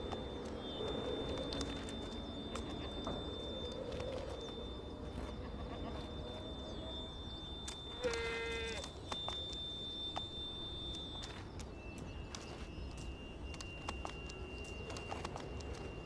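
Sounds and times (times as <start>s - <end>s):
thin steady high tone: 0.0s - 16.0s
sharp clicks: 7.5s - 16.0s.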